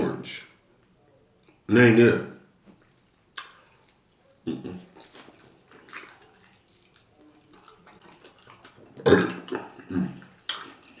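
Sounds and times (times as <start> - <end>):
mouth and eating noises: 2.7 - 11.0
man burping: 9.0 - 10.2.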